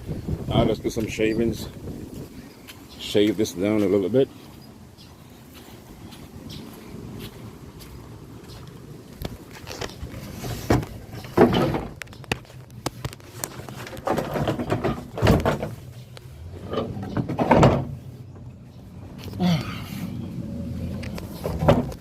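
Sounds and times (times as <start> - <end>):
board scraping on truck bed: 9.5 - 12.0, 13.3 - 18.1.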